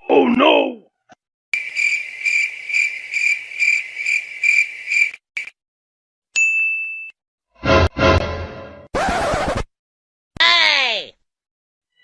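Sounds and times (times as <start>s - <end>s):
cricket chirping: 1.6s - 5.5s
short high ding: 6.4s - 7.2s.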